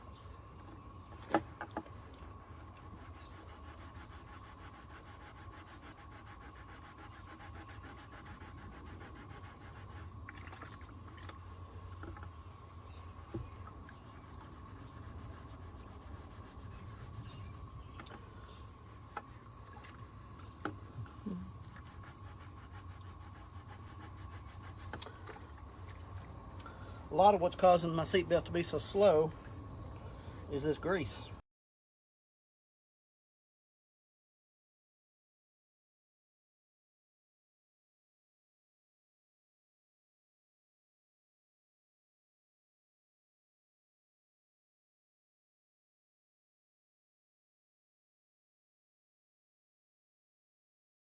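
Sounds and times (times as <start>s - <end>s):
steady low hum: 0.0s - 31.4s
sponge scrubbing webbing: 2.4s - 10.2s, 13.2s - 17.8s, 18.7s - 25.0s.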